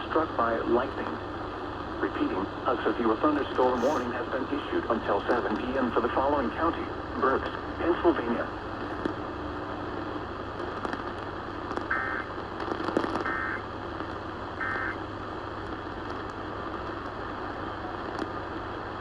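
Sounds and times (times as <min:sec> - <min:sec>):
radio static hiss: 0:00.0 - 0:09.1, 0:10.6 - 0:18.4
buzzy data bursts: 0:14.6 - 0:15.0.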